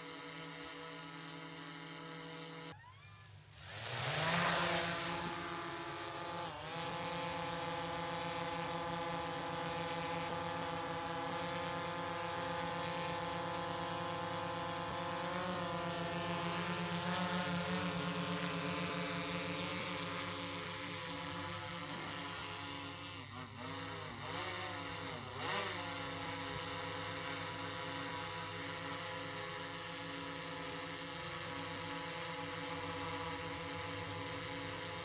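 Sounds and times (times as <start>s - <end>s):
drone propellers whining: 3.6s - 7.6s, 12.1s - 22.5s.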